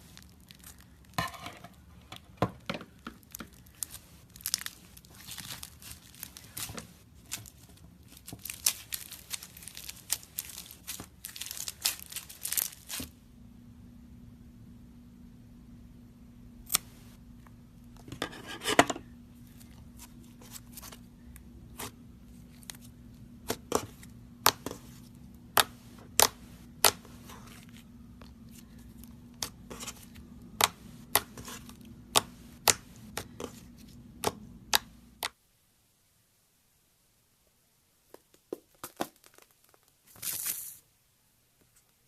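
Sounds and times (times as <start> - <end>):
steady low hum: 0.0 - 35.3.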